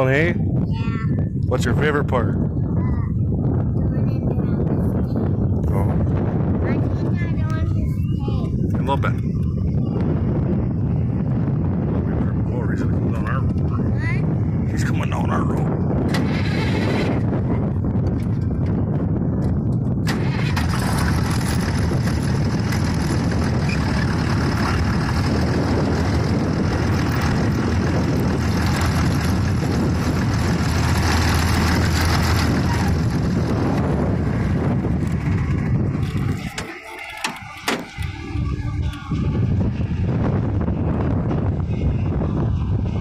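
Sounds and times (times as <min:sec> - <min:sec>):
tractor diesel engine running: 0:15.9 - 0:43.0
sharp knocks: 0:36.5 - 0:38.0.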